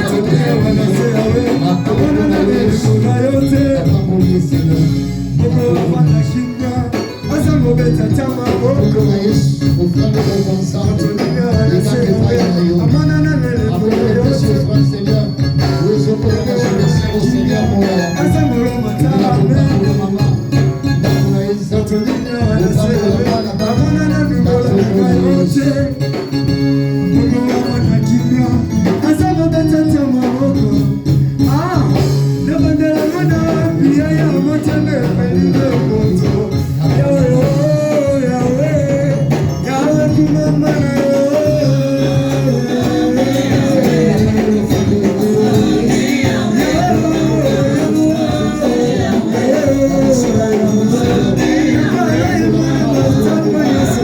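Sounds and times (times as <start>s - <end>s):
steady percussion beat: 0.0s - 54.0s
worship singing over instruments: 0.0s - 54.0s.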